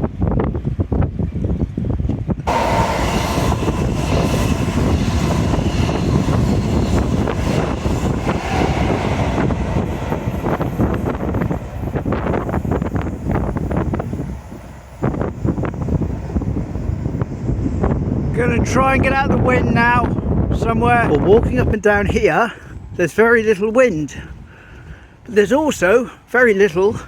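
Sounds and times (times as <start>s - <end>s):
wind buffeting microphone: 0.0s - 27.0s
rushing noise: 2.4s - 21.7s.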